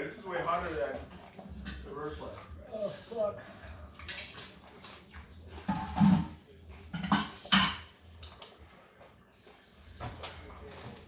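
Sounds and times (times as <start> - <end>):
utensils clinking against dishes: 0.2 - 3.1, 4.0 - 8.6.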